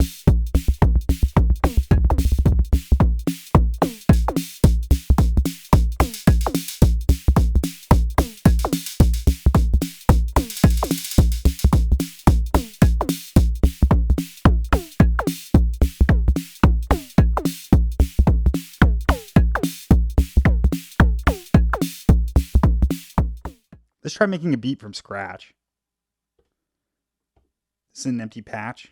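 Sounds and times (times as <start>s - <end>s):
deep kick drums: 0.0s - 23.5s
pitched drum hits dropping: 1.6s - 2.6s, 3.6s - 13.1s.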